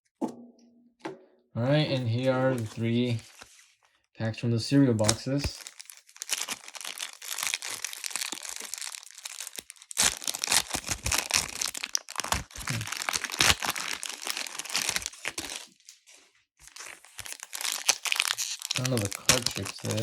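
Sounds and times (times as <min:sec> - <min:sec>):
plastic wrapper crinkling: 0:05.0 - 0:20.0.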